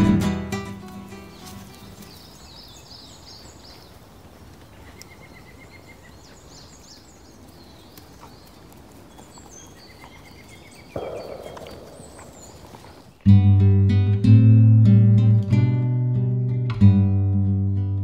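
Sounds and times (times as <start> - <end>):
birds chirping and twittering: 0.6 - 13.3.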